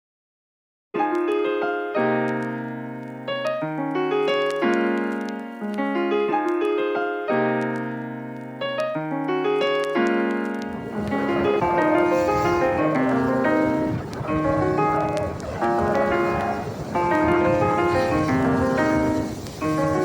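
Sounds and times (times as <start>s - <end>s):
piano playing sustained chords: 1.0s - 20.0s.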